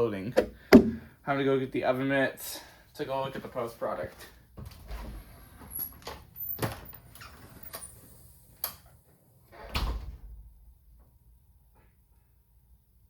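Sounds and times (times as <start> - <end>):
door knocks and thumps: 0.4 - 1.0.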